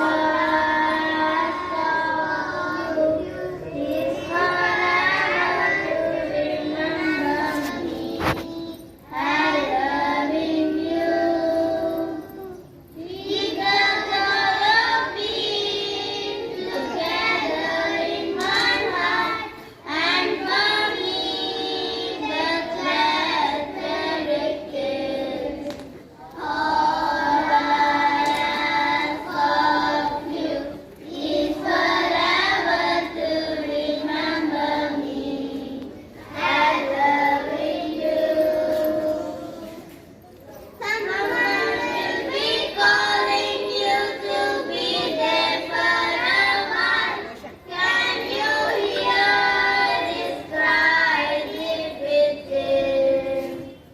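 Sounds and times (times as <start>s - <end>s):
children singing: 0.0s - 40.0s, 40.8s - 53.9s.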